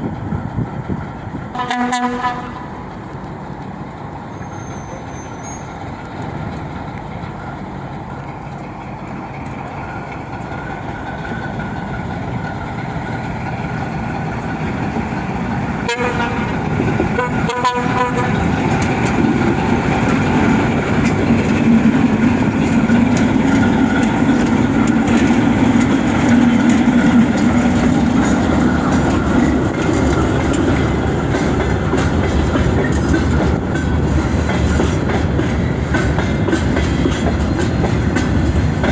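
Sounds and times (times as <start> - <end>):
diesel locomotive engine: 0.0 - 38.9
train wheels clattering on rails: 0.0 - 38.9
locomotive horn toots: 1.6 - 2.7, 15.8 - 18.5.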